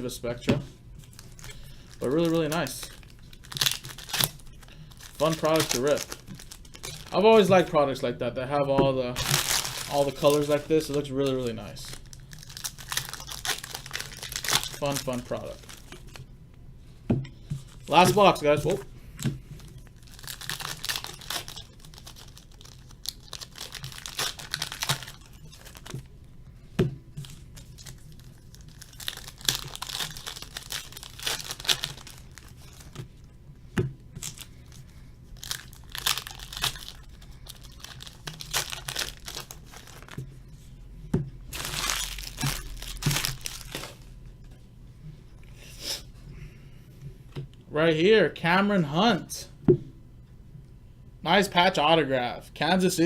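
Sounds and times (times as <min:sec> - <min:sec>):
packaging tearing and crinkling: 0:01.0 - 0:07.5, 0:09.2 - 0:16.2, 0:19.8 - 0:26.1, 0:27.2 - 0:33.0, 0:35.4 - 0:40.2, 0:41.5 - 0:44.0.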